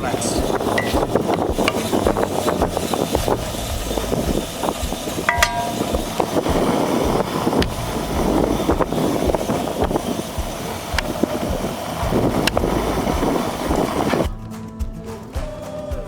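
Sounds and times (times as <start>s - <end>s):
food sizzling in skillet: 0.0s - 14.3s
wind buffeting microphone: 0.0s - 14.4s.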